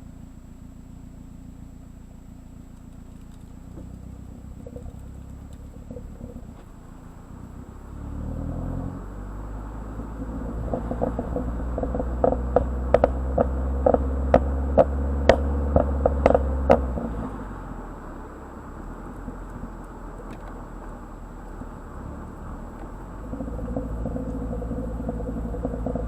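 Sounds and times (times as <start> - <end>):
car engine revving: 0.0 - 26.0
exhaust pops and crackles: 1.2 - 8.0, 9.0 - 26.0.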